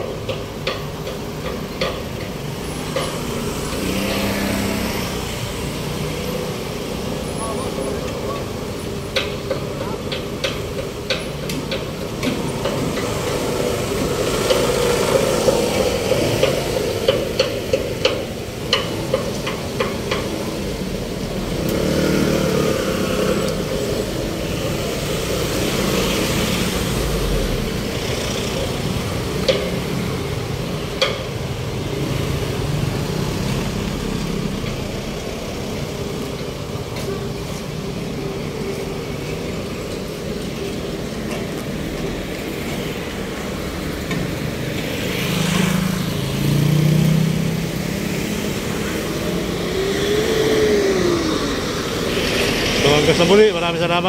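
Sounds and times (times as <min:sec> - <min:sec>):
traffic passing: 0:00.0 - 0:54.0
louder vehicle passing: 0:02.6 - 0:07.3, 0:21.0 - 0:30.6, 0:31.6 - 0:54.0.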